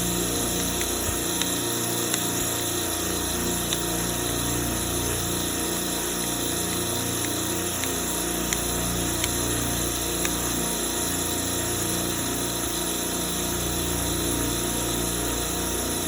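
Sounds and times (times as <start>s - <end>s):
compressor pistons pumping: 0.0s - 10.8s
light ticks: 0.7s - 2.5s, 3.6s - 3.9s, 6.6s - 10.5s.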